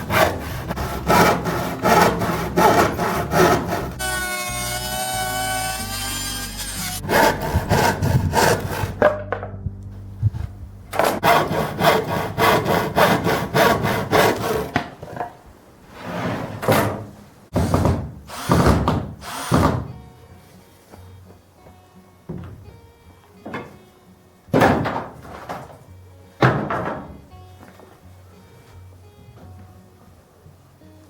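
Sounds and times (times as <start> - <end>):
hand saw cutting wood: 0.0 - 9.2, 10.9 - 15.3, 16.6 - 19.9.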